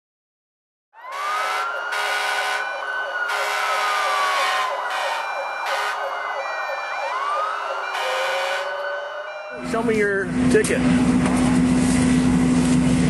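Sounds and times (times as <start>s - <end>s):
emergency vehicle siren wailing: 1.0s - 11.1s.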